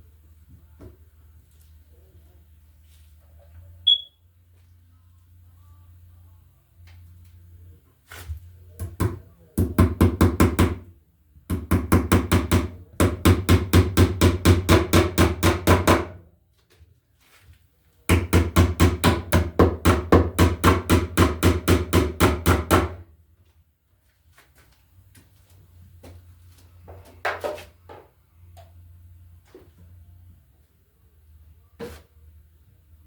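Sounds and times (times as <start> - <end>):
hammer driving nails: 11.5 - 16.2, 18.1 - 23.0.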